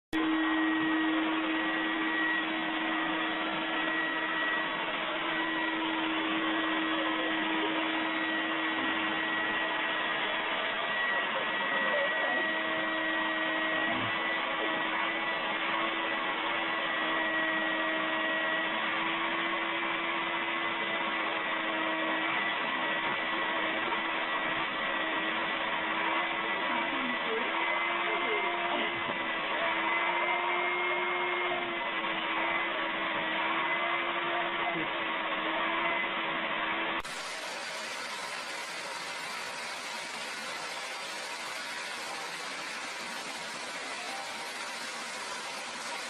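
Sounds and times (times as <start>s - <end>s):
vacuum cleaner running: 0.1s - 46.0s.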